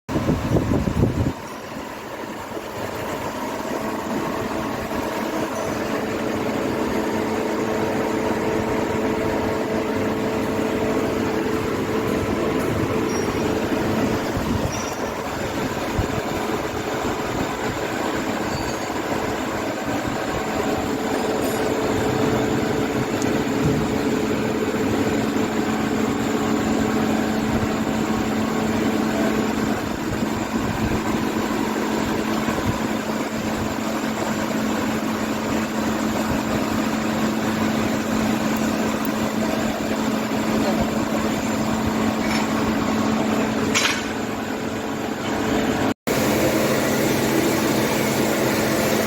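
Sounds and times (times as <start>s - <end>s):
mechanical running noise: 0.1s - 49.0s.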